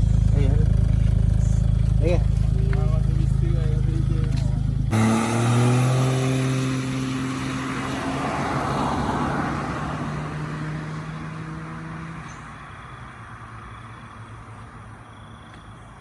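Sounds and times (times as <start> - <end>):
car engine running: 0.0 - 12.5.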